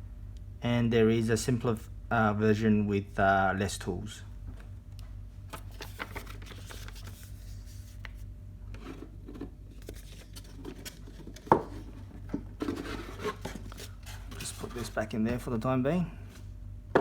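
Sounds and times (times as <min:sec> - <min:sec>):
packaging rustling: 0:05.5 - 0:08.2, 0:09.7 - 0:12.0, 0:12.6 - 0:15.1.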